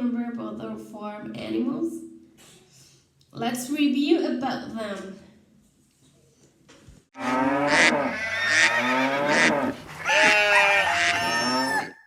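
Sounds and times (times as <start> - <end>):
cattle mooing: 7.2 - 12.0
farm animal calls: 7.2 - 12.0.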